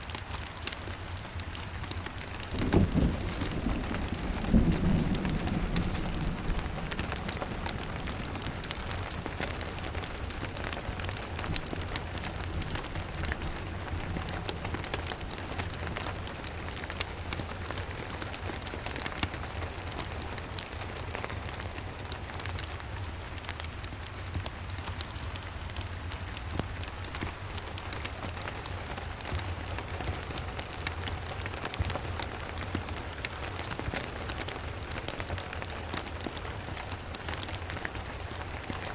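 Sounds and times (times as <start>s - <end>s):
steady rain: 0.0s - 38.9s
distant thunder rumble: 2.0s - 19.0s.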